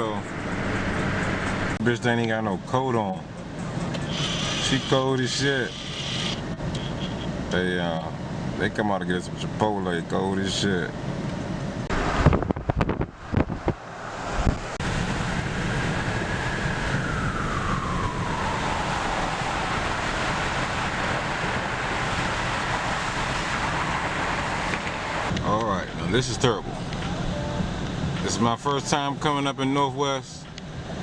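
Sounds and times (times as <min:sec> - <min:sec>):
car road noise: 0:00.0 - 0:31.0
wind rushing: 0:11.8 - 0:25.4.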